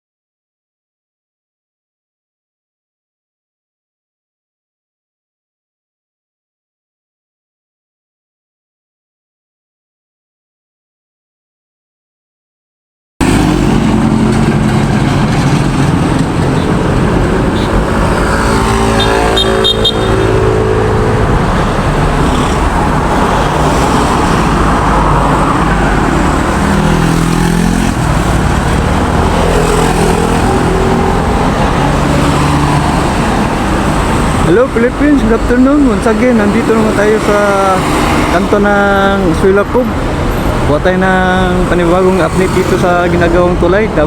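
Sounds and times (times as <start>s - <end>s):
road traffic passing: 13.2s - 44.0s.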